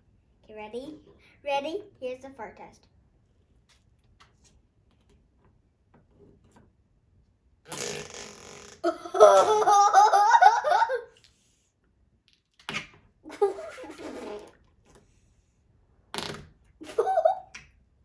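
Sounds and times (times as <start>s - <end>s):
noise putty fart-like noises: 7.6s - 9.0s, 12.6s - 14.7s, 16.0s - 17.0s.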